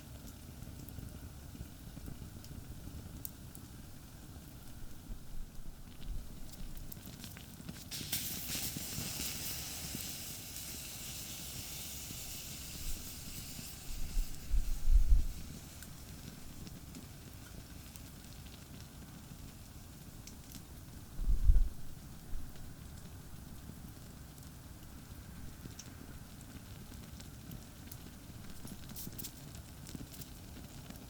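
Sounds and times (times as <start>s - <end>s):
campfire crackling and hissing: 0.0s - 31.0s.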